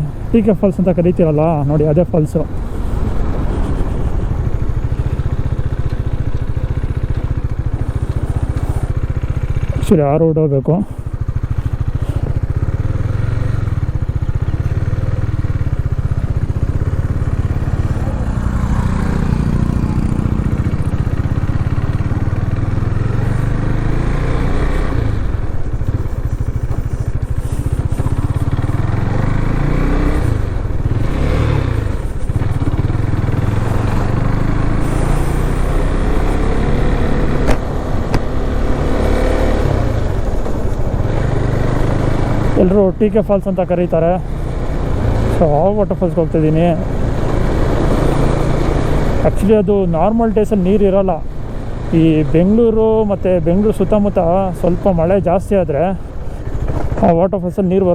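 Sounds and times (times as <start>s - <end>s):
motorcycle engine revving: 0.0s - 57.9s
sharp knock: 37.4s - 38.3s.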